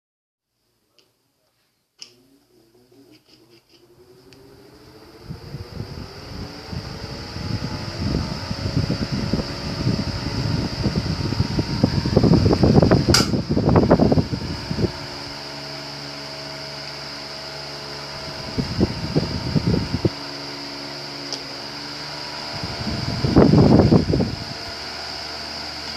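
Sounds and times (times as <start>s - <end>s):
electric fan humming and whining: 0.8s - 25.9s
low rumbling bursts: 3.8s - 16.0s, 17.5s - 20.2s, 22.4s - 24.9s
sharp click: 13.1s - 13.4s.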